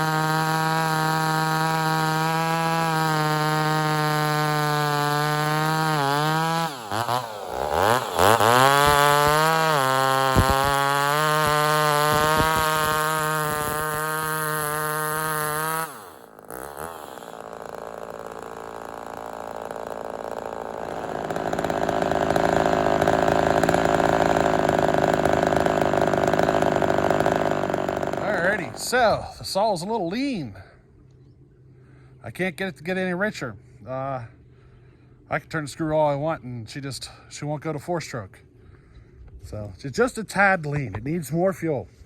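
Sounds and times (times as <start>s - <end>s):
chainsaw running at high revs: 0.0s - 29.3s.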